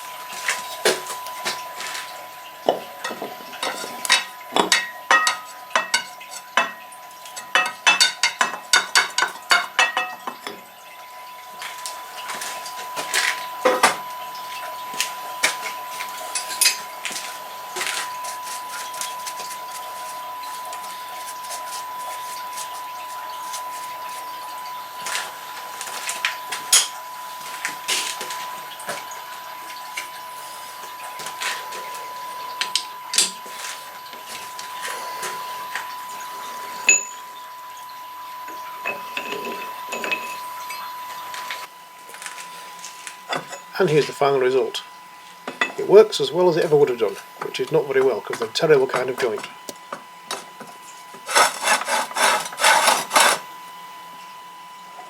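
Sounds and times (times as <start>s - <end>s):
steady high thin tone: 42.4s - 53.9s.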